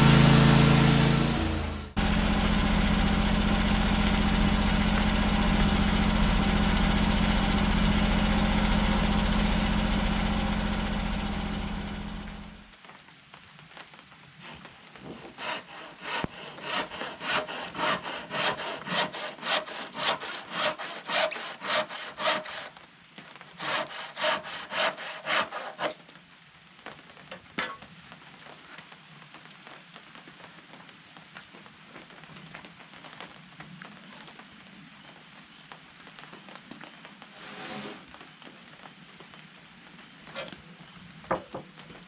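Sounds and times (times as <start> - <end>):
handsaw cutting wood: 0.0 - 2.0, 14.4 - 22.8, 23.4 - 26.0, 37.4 - 38.0.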